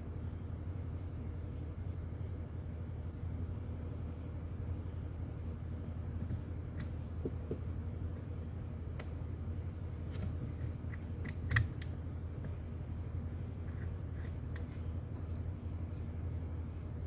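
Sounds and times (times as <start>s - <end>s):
small parts clicking and tapping: 10.0s - 12.6s, 13.6s - 16.1s.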